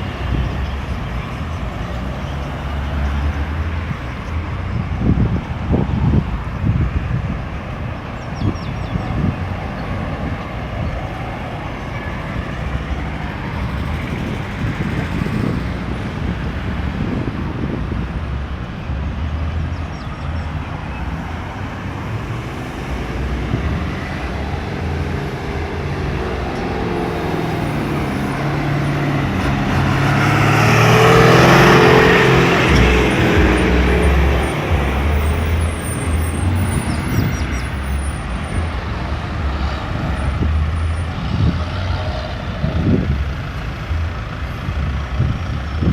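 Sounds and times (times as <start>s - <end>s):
road traffic passing: 0.0s - 45.9s
large engine passing close: 21.0s - 45.9s.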